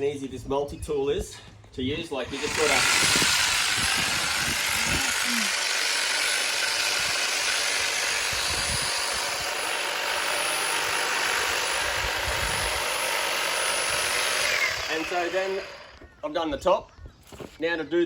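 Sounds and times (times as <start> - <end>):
hedge trimmer running: 2.2 - 16.2.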